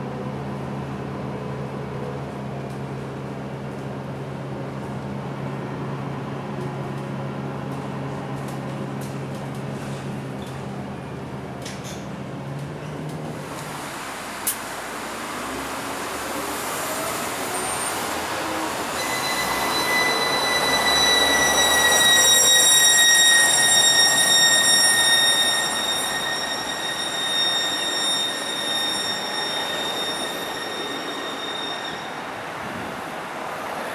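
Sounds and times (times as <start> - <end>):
bus vehicle noise: 0.0 - 22.7
bus high-pitched whine: 13.3 - 33.9.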